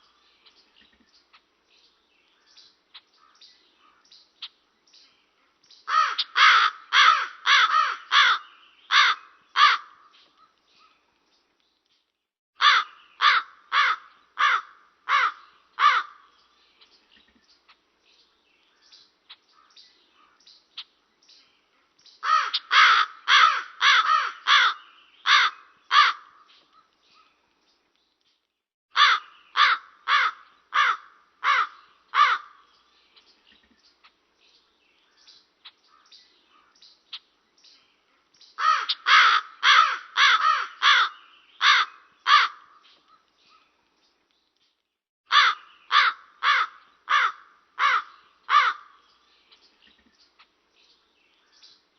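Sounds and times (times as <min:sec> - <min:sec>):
raven cawing: 0:05.9 - 0:10.1, 0:12.6 - 0:16.3, 0:22.2 - 0:26.5, 0:28.9 - 0:32.7, 0:38.6 - 0:42.8, 0:45.3 - 0:49.0.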